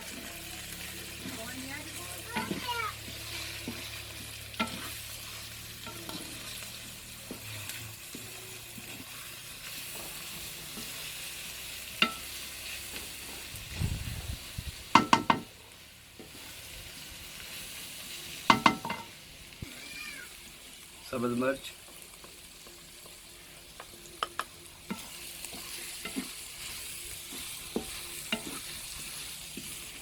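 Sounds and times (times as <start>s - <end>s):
chicken sizzling in a pan: 0.0s - 30.0s
metal spoon clinking on pan: 12.0s - 12.3s.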